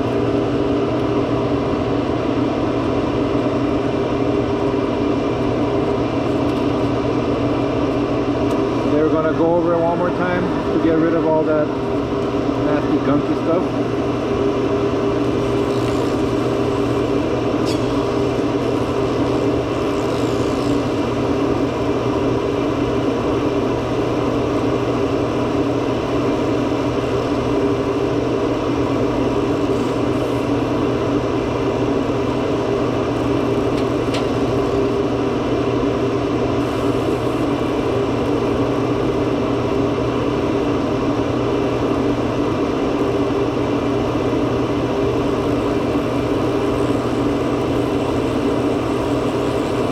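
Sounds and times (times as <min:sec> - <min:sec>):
machine humming: 0:00.0 - 0:49.9.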